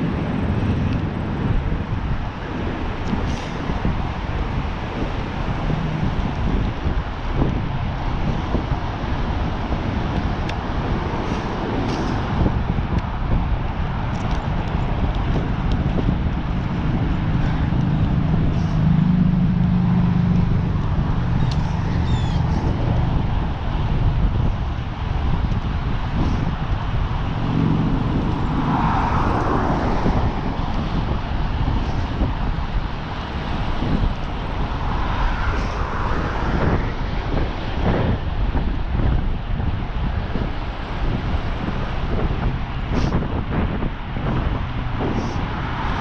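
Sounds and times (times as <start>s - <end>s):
bicycle tyres rolling: 0.0s - 46.0s
wind buffeting microphone: 0.0s - 46.0s.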